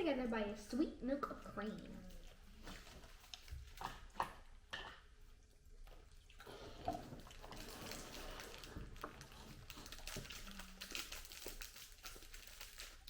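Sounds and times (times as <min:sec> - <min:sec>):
plastic wrapper crackling: 0:07.2 - 0:13.0.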